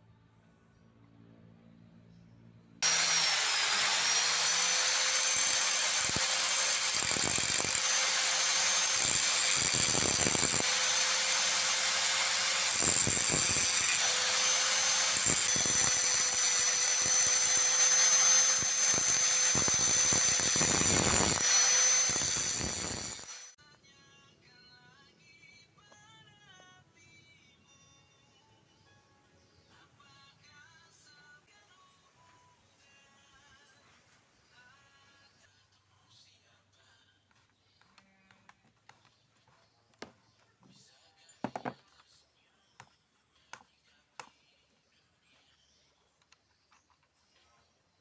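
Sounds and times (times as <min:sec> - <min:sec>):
electric drill whining and cutting: 0:02.8 - 0:23.6.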